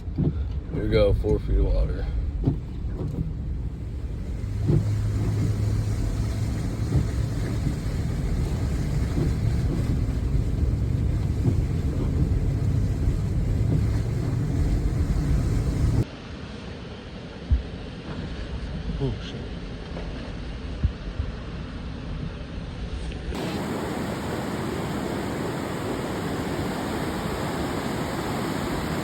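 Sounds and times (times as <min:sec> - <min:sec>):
water churning around vehicle: 0:00.0 - 0:16.1, 0:23.4 - 0:29.0
vehicle engine running: 0:02.1 - 0:16.0, 0:23.4 - 0:29.0.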